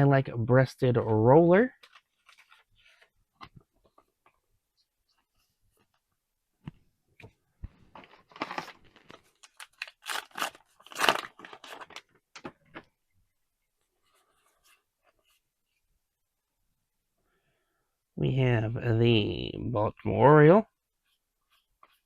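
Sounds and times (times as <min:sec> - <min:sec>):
foil wrapper tearing and crinkling: 0:08.3 - 0:12.1.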